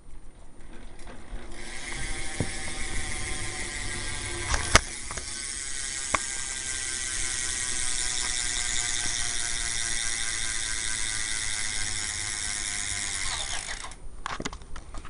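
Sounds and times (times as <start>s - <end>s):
bike hub ratcheting: 0.7s - 14.0s.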